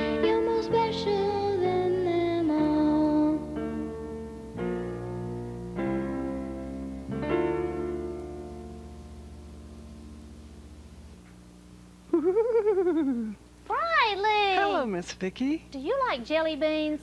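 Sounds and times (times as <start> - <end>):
keyboard sustained chords: 0.0 - 11.2.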